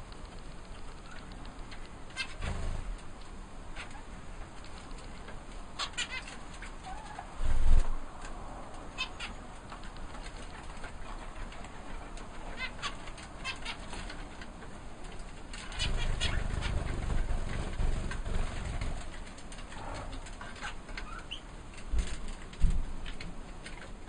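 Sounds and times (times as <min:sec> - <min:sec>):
birds chirping: 0:15.6 - 0:19.8, 0:20.4 - 0:21.5
low rumbling noise: 0:15.8 - 0:20.4.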